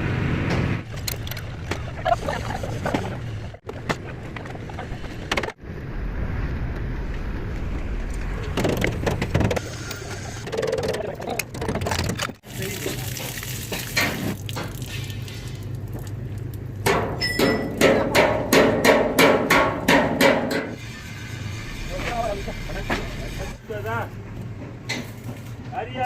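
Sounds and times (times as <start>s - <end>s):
sharp metal knocks and clicks: 16.8s - 20.8s.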